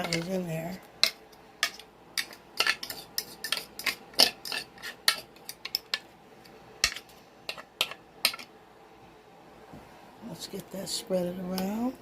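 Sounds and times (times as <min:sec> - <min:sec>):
utensil scraping batter in a bowl: 0:01.6 - 0:05.7.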